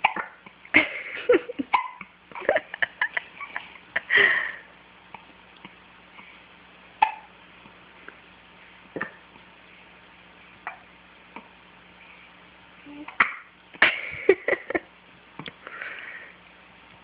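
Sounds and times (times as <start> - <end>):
person hiccuping: 1.7 - 2.1, 7.0 - 7.3.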